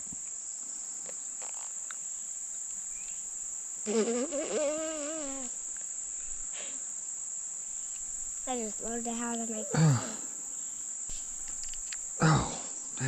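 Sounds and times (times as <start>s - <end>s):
insects chorus: 0.0s - 13.0s
person's wavering voice: 8.5s - 10.2s.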